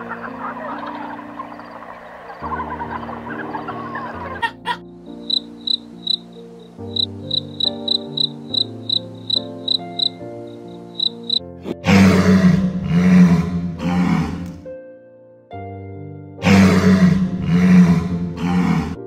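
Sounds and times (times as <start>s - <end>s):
cricket chirping: 0.0s - 11.4s
soft background music: 0.0s - 19.0s
rough animal roar: 11.6s - 14.5s, 16.4s - 19.0s.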